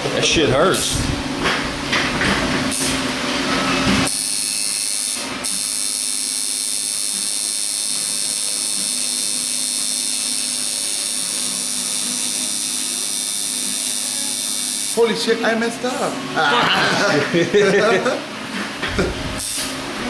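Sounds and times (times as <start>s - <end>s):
tattoo machine buzzing: 3.9s - 15.2s, 19.3s - 19.8s.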